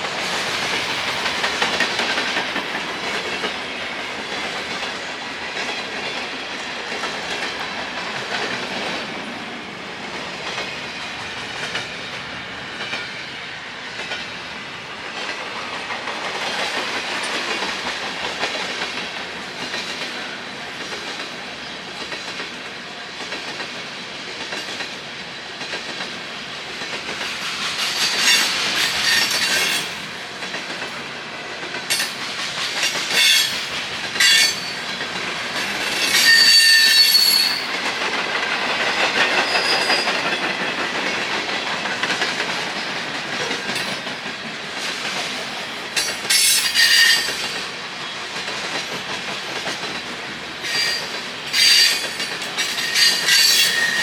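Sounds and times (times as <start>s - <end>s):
train wheels clacking over rail joints: 0.0s - 9.3s, 13.9s - 54.0s
high wheel squeals: 35.9s - 37.7s, 39.4s - 40.3s, 46.3s - 47.4s, 50.6s - 54.0s.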